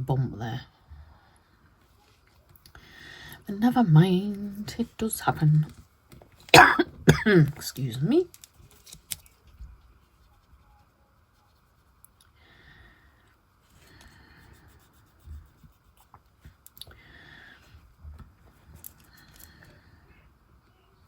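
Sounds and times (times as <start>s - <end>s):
faint scratching and rubbing: 8.5s - 12.2s, 13.6s - 16.6s.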